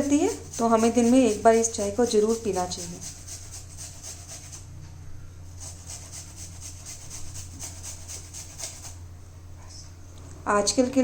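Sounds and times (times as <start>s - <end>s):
ginger scraping on a grater: 0.0s - 4.7s, 5.5s - 9.0s.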